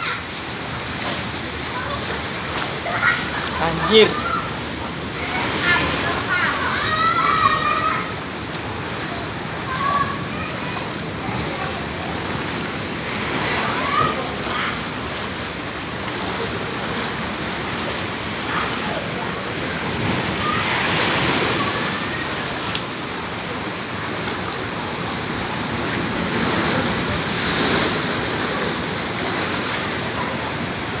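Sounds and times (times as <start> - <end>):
sea waves breaking: 0.0 - 31.0.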